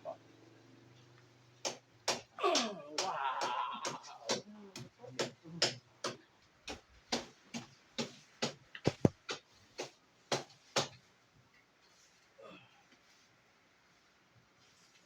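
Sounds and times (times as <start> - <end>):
hands tapping on body: 1.6 - 11.0.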